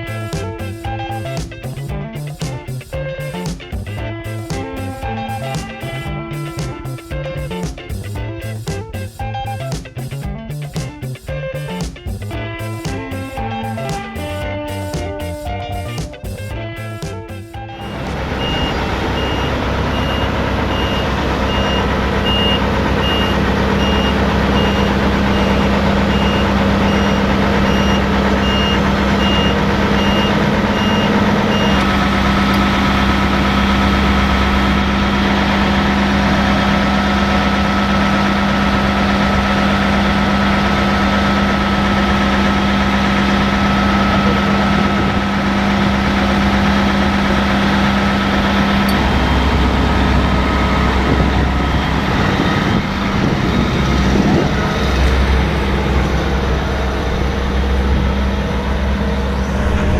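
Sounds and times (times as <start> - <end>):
diesel engine running: 0.0 - 59.9
steady high whine: 0.0 - 59.9
reversing alarm beeping: 17.8 - 34.0, 48.4 - 53.9.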